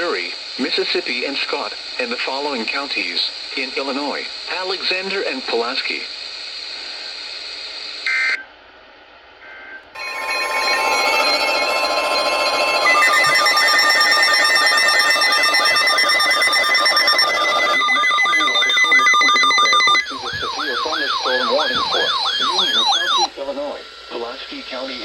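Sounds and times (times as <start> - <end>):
steady electronic alert tones: 10.0 - 23.3
warbling siren-like tone: 10.0 - 23.3.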